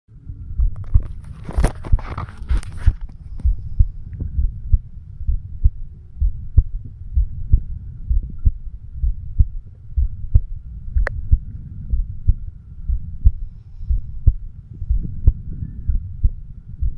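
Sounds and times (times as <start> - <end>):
faint steady hum: 0.1 - 16.9
heart beating: 0.2 - 16.9
scratchy handling noise: 0.8 - 3.6.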